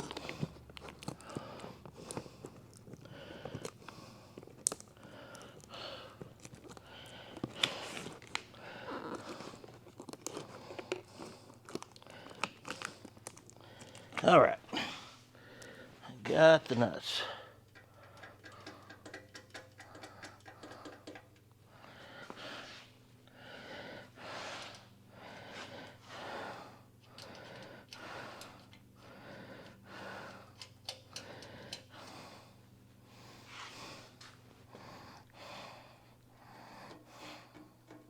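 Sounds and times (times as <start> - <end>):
hand ratchet clicking: 17.7 - 21.4.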